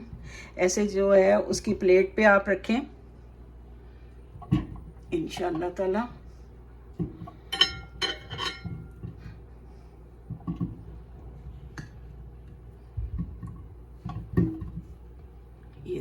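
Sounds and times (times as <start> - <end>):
glass plate clinking: 7.4 - 9.0.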